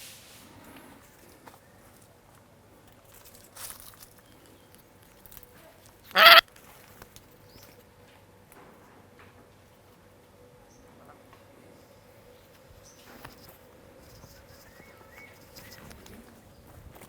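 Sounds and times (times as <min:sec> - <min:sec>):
farm bird call: 0:06.1 - 0:06.4.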